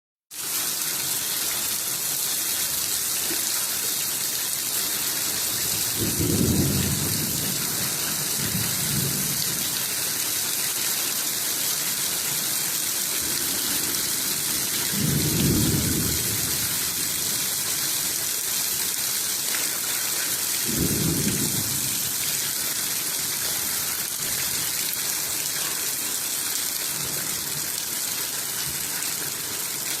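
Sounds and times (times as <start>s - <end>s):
heavy rain: 0.3s - 30.0s
thunder rumbling: 6.0s - 9.6s.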